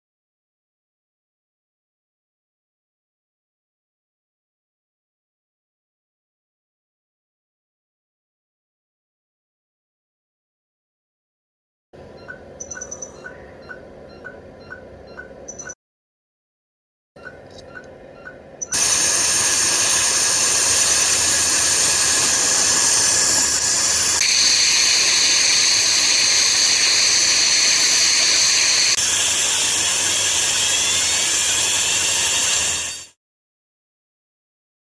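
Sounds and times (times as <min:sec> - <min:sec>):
dental drill whine: 0:18.7 - 0:33.2.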